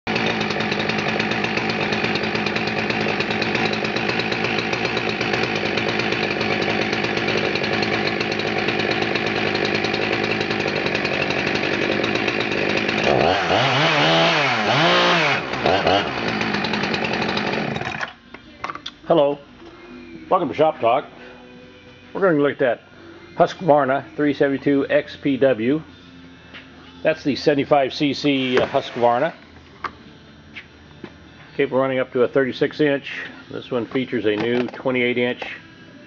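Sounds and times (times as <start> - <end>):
chainsaw running and revving: 0.1 - 18.1.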